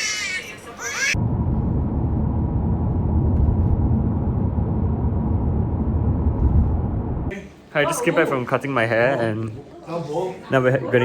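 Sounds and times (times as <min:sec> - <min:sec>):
steady low rumble: 0:01.1 - 0:07.3.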